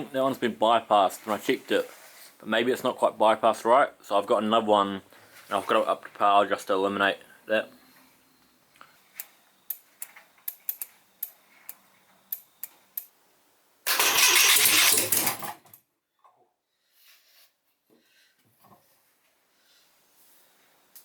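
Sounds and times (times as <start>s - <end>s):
sharp clicks: 9.2s - 13.1s
engine turning over: 13.9s - 15.6s.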